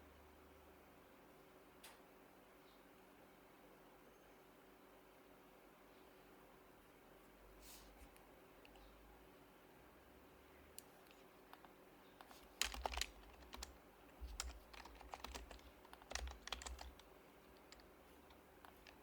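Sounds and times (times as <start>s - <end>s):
keyboard keys clacking softly: 11.1s - 19.0s.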